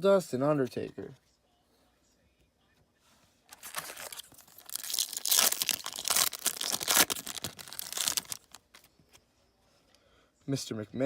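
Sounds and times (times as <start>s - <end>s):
foil wrapper tearing and crinkling: 3.5s - 8.8s.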